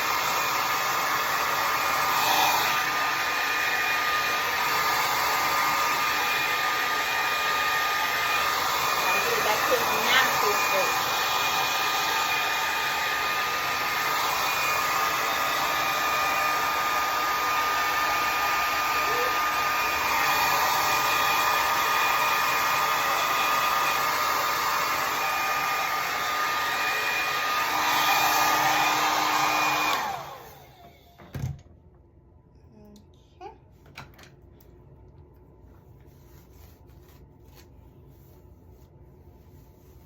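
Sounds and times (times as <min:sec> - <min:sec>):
blow dryer running: 0:00.0 - 0:31.6.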